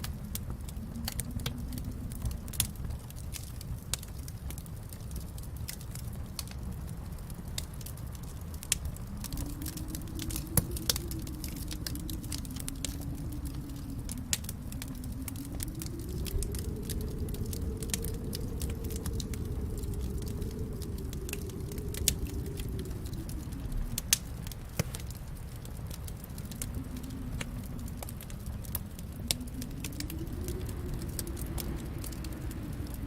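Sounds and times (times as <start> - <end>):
fire crackling and popping: 0.0 - 33.0
low rumble: 0.0 - 33.0.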